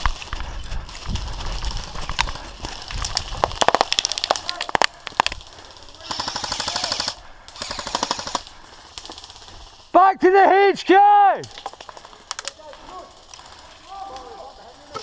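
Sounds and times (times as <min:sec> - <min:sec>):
airsoft guns firing bursts: 0:03.6 - 0:09.9.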